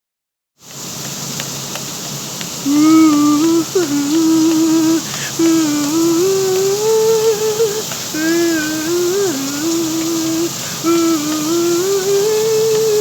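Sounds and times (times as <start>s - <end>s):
steady hiss: 0.6s - 13.0s
person humming: 2.6s - 13.0s.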